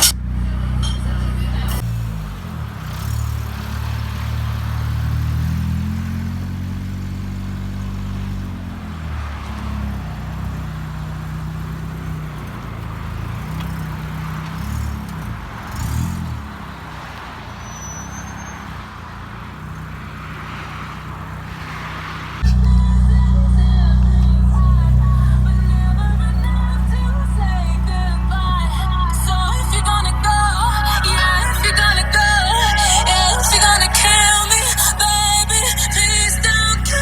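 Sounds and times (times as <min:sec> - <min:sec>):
subwoofer playing deep bass: 0:22.4 - 0:37.0.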